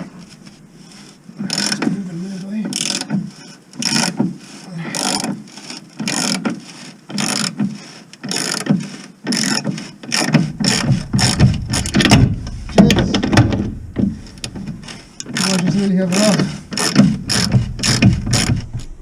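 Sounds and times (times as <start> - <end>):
hand ratchet clicking: 1.4 - 1.9, 2.6 - 4.3, 5.0 - 19.0
low rumble: 10.5 - 19.0.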